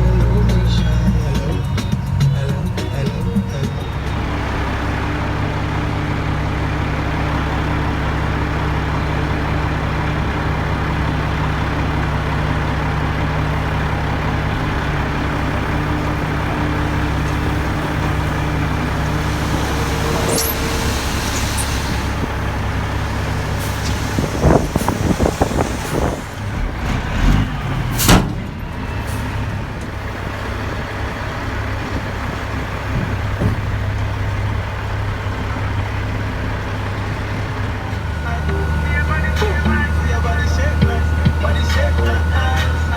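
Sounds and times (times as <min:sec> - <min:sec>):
diesel truck engine running: 0:00.0 - 0:42.9
sharp loud bang: 0:28.0 - 0:28.6.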